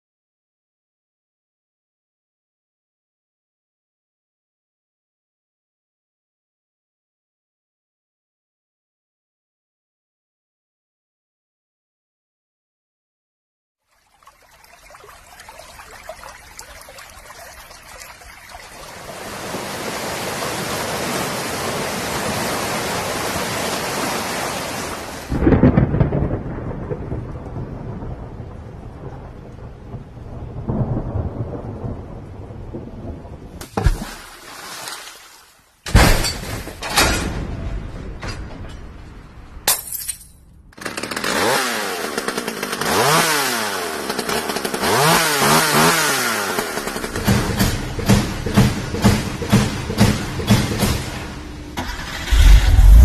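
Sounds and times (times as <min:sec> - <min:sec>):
steady rain hiss: 0:14.3 - 0:25.4
thunder rumble: 0:25.3 - 0:33.6, 0:51.5 - 0:53.0
short sudden sounds: 0:51.8 - 0:53.0.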